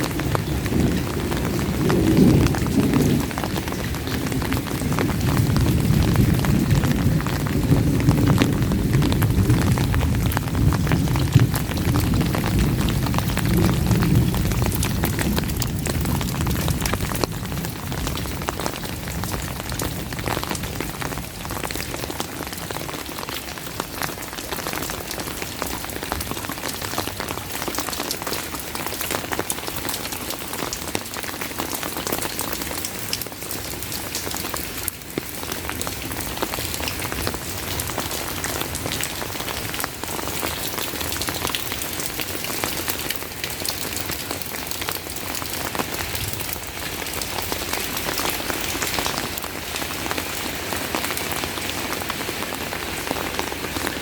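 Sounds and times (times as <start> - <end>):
low thunder rumble: 0.0 - 22.0
heavy rain: 0.0 - 54.0
raindrop hits: 0.0 - 54.0.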